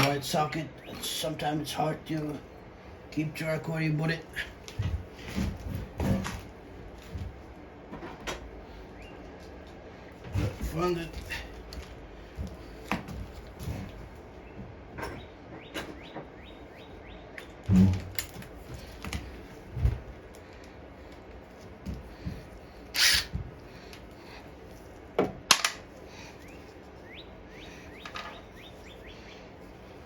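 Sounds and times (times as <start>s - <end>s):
birds chirping faintly: 8.6s - 12.8s, 13.6s - 17.6s, 25.9s - 30.0s.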